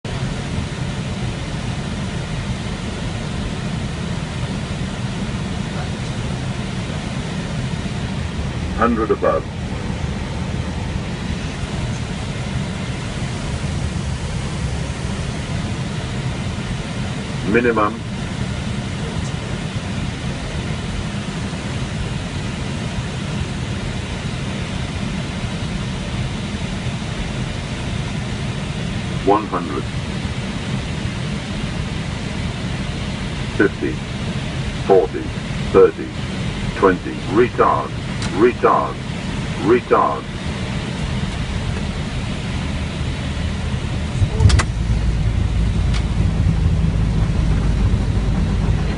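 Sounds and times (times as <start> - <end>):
airliner cockpit rumble: 0.0 - 48.9
rushing air and engines: 0.0 - 48.9
landing gear thump and clicks: 44.4 - 44.8.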